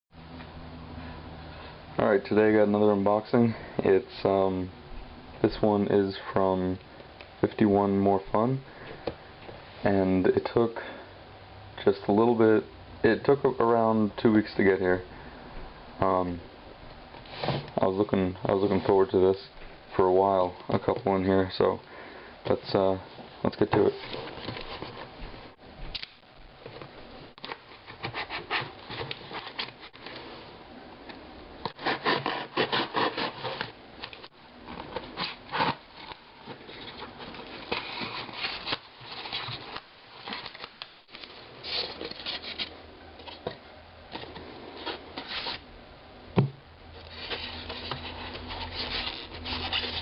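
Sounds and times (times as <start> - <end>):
packaging rustling and scraping: 17.2 - 17.9, 23.7 - 25.2, 26.6 - 30.6, 31.6 - 45.6, 46.9 - 50.0.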